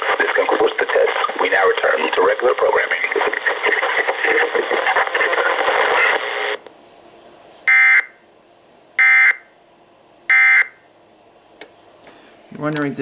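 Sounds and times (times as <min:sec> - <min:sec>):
radio broadcast voice: 0:00.0 - 0:06.6.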